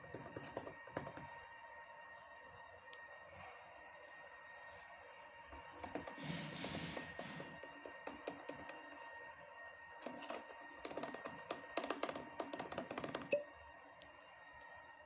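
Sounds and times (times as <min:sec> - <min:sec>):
faint steady hum: 0:00.0 - 0:15.0
rapid light clicks: 0:05.6 - 0:09.2.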